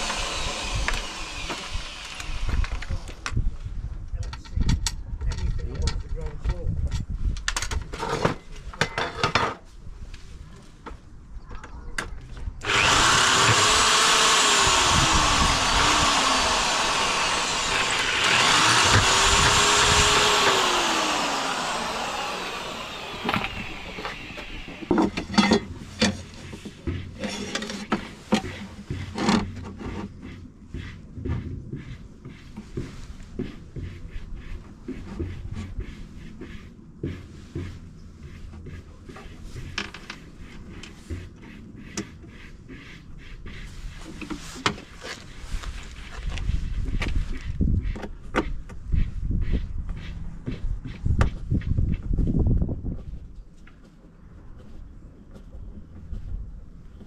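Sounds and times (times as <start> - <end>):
power drill grinding: 0.0 - 2.9, 12.6 - 25.5.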